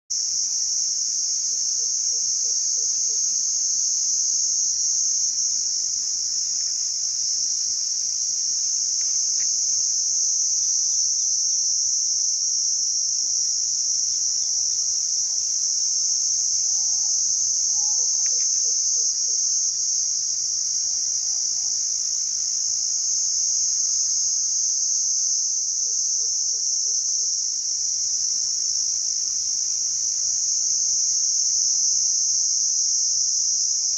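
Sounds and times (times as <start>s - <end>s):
crickets chirping: 0.1s - 33.9s.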